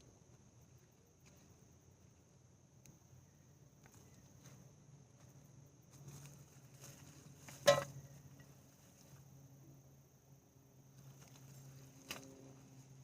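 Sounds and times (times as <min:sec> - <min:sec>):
rustling and scraping of soil: 0:03.8 - 0:09.6, 0:10.9 - 0:13.0.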